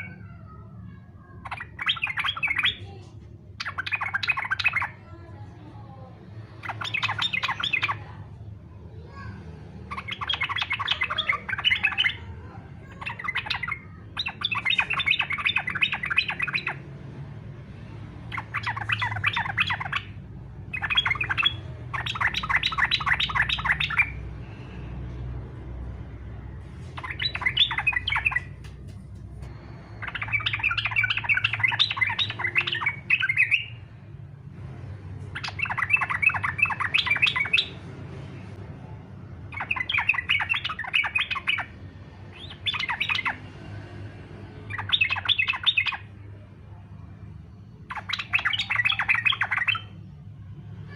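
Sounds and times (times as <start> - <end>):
bird rapid chattering song: 1.4 - 5.0, 6.4 - 8.2, 9.8 - 17.0, 18.2 - 24.9, 26.8 - 33.9, 35.2 - 37.9, 39.4 - 43.6, 44.6 - 46.4, 47.8 - 50.0.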